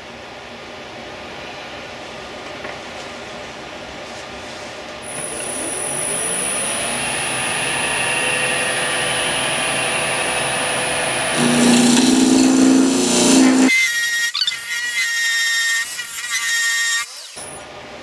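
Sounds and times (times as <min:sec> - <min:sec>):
wood lathe whining: 0:11.4 - 0:15.0.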